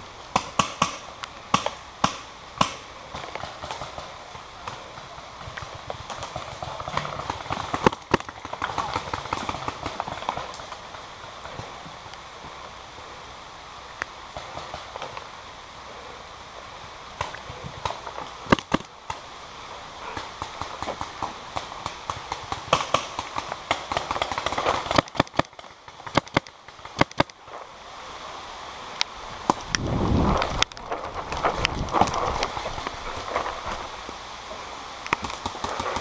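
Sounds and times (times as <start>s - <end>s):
hiss of rain: 0.0s - 36.0s
paintball markers firing: 24.1s - 27.4s.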